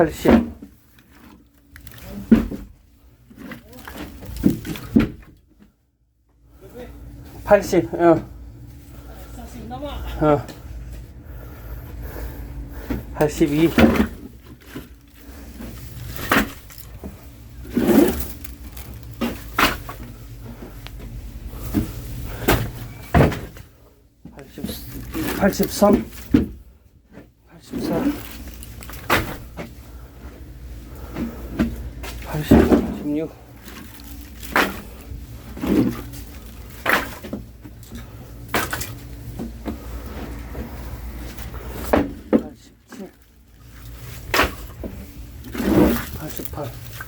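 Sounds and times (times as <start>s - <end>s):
low rumble: 8.6s - 14.2s.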